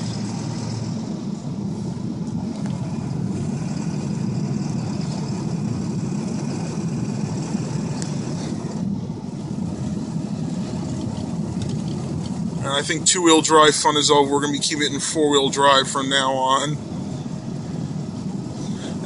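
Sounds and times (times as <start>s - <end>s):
pickup truck driving through snow: 0.0s - 14.1s.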